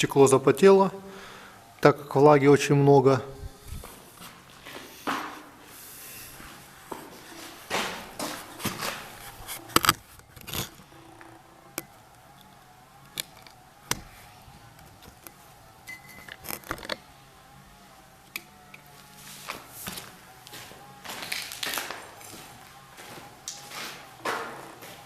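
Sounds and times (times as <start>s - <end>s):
scraping or rustling bursts: 3.4s - 11.4s.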